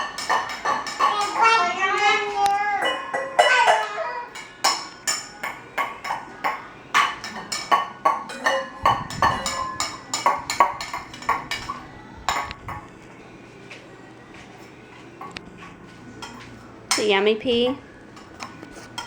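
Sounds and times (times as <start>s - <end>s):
toy pots and pans clinking: 0.0s - 12.5s.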